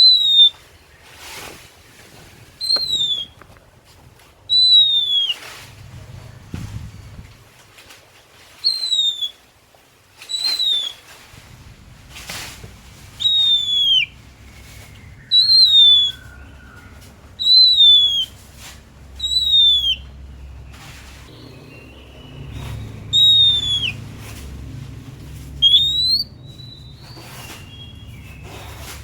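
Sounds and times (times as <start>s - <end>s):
bird singing whistled notes: 0.0s - 0.7s, 2.6s - 3.4s, 4.5s - 5.5s, 8.6s - 9.4s, 10.3s - 11.0s, 13.2s - 18.4s, 19.2s - 20.6s, 21.3s - 24.1s, 25.6s - 29.0s.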